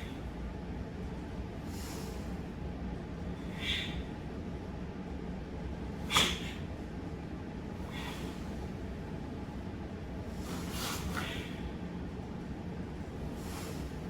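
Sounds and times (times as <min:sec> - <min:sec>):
steady low hum: 0:00.0 - 0:14.0
sharp hissing breaths: 0:01.7 - 0:02.5, 0:03.4 - 0:04.2, 0:06.0 - 0:06.7, 0:07.8 - 0:08.7, 0:10.3 - 0:11.7, 0:13.3 - 0:14.0.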